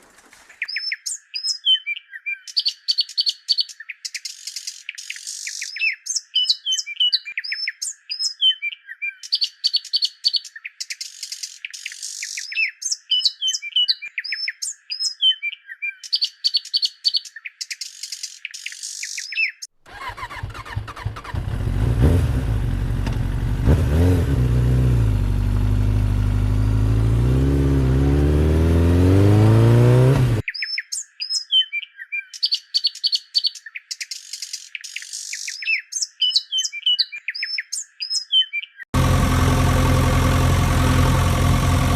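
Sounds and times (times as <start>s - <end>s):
birds chirping: 0.0s - 21.3s, 25.6s - 41.9s
engine running and revving: 20.3s - 30.4s, 39.0s - 41.9s.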